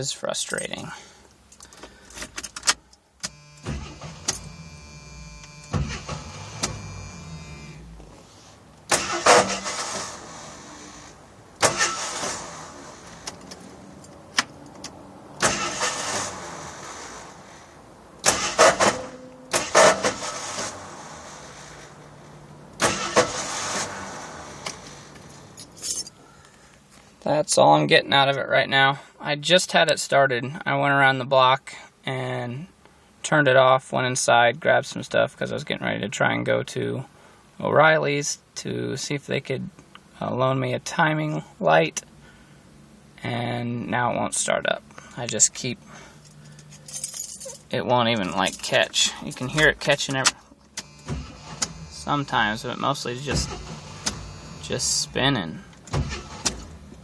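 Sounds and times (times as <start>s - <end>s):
engine cranking by starter: 1.8s - 8.1s, 8.9s - 13.6s, 15.4s - 17.4s, 18.2s - 22.0s, 22.7s - 25.1s, 48.2s - 57.0s.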